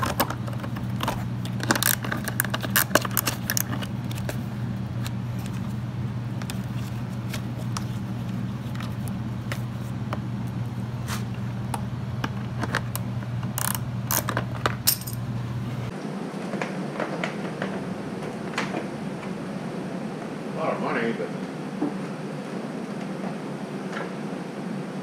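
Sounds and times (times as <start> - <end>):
steady low hum: 0.0 - 25.0
small hardware clicking and clinking: 13.6 - 15.2.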